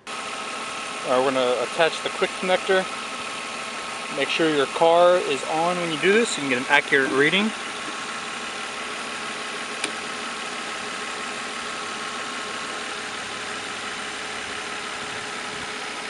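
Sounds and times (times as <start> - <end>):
car engine idling: 0.0 - 16.0
light click: 9.8 - 10.0.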